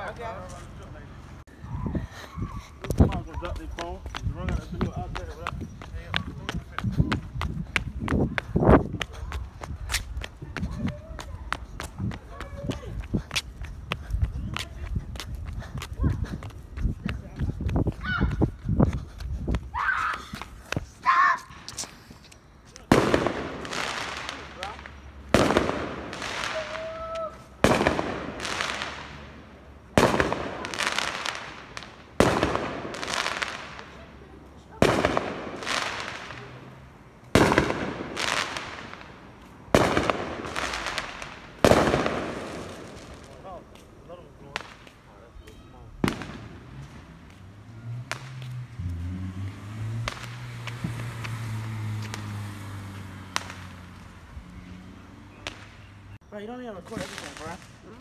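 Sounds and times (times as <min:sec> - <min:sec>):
fireworks bangs: 0:22.8 - 0:34.1, 0:34.7 - 0:36.7, 0:37.3 - 0:43.7, 0:44.4 - 0:45.0, 0:45.8 - 0:47.2, 0:47.9 - 0:48.7, 0:49.9 - 0:52.7, 0:53.3 - 0:53.9
fireworks crackling: 0:22.8 - 0:49.0, 0:49.6 - 0:54.3, 0:56.6 - 0:58.0.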